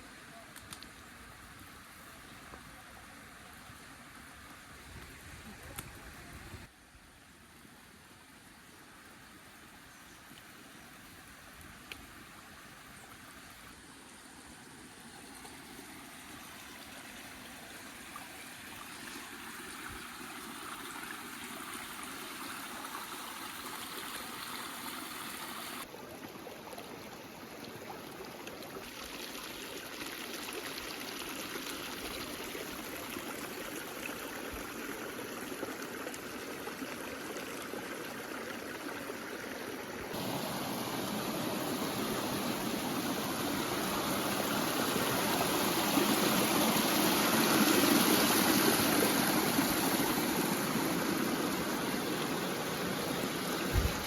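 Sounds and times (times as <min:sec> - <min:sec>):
stream water rushing: 0:14.9 - 0:54.0.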